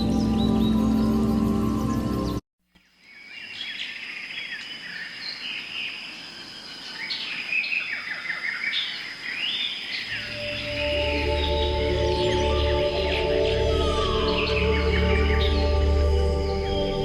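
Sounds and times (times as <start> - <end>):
birds chirping and calling: 0.0 - 2.4, 3.1 - 17.0
high insect-like whine: 9.3 - 17.0.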